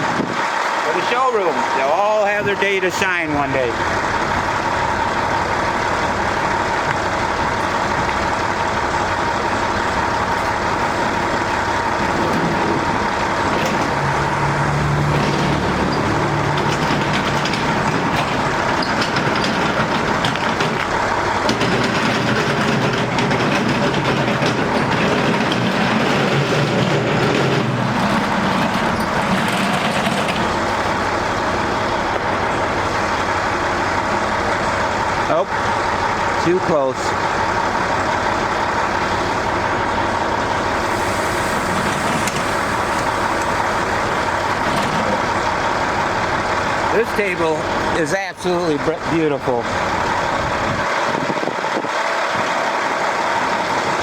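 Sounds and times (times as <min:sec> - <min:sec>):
mechanical drone and hiss: 0:40.5 - 0:45.4.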